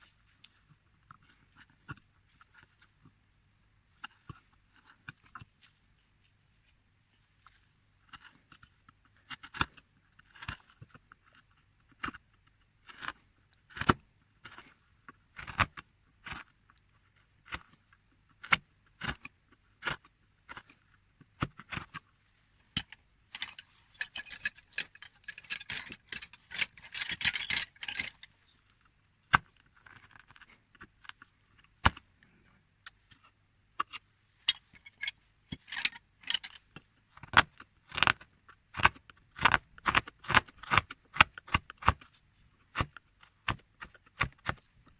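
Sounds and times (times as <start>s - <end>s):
carving tool clicks and taps: 9.3s - 11.2s, 11.8s - 17.8s, 18.4s - 20.8s, 29.3s - 32.1s, 37.2s - 44.7s
tool scraping: 23.3s - 28.5s.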